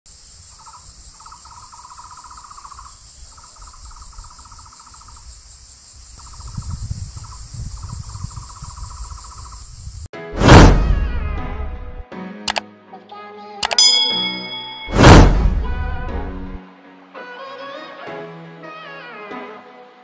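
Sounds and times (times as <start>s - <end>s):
high-pitched insect drone: 0.1s - 10.1s
low rumble: 14.9s - 16.6s.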